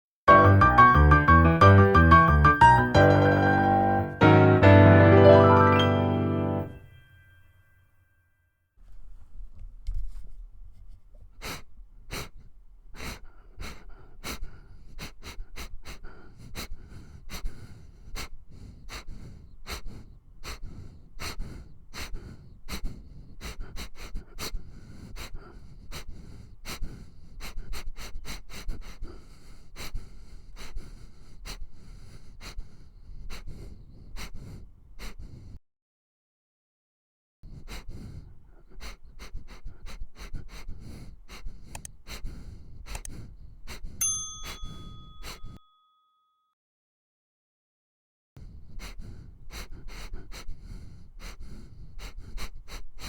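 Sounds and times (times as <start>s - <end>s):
dog sniffing: 9.9s - 35.6s, 37.5s - 45.6s, 48.5s - 53.0s.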